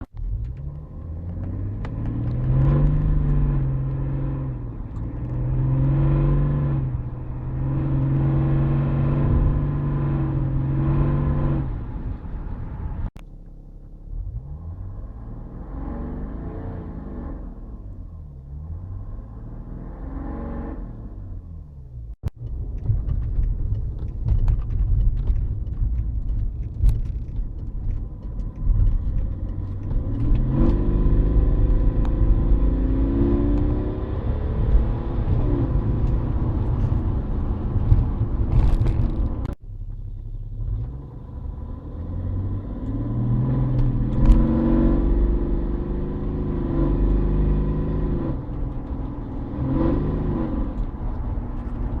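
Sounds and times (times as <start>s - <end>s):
diesel engine rumble: 0.0s - 52.0s.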